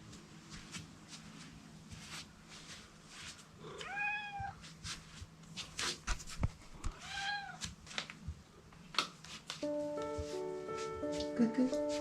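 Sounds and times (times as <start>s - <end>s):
cat meowing: 3.7s - 4.6s, 6.9s - 7.6s.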